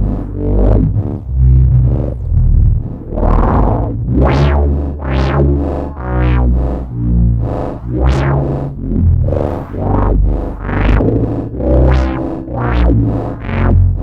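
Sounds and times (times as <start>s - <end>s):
synthesizer drone: 0.0s - 14.0s.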